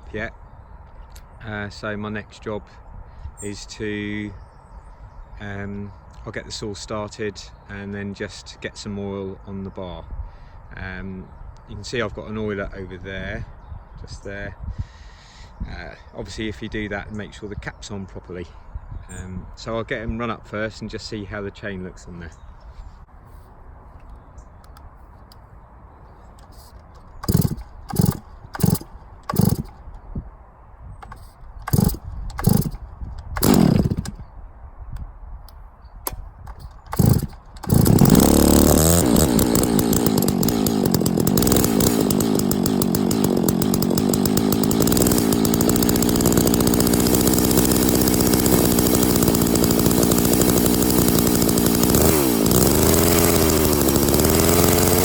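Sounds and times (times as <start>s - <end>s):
chainsaw starting and running: 26.4s - 30.1s, 31.0s - 34.2s, 36.1s - 55.0s.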